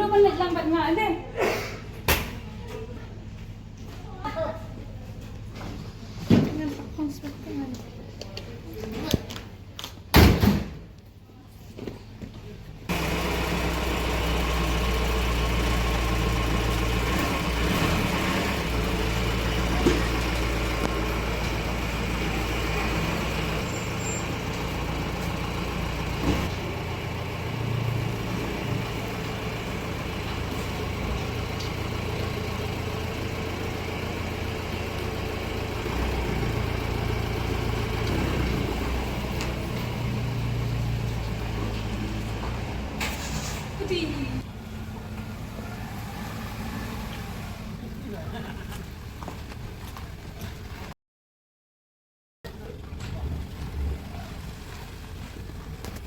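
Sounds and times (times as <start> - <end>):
vehicle engine running: 12.7 - 50.9, 52.5 - 56.0.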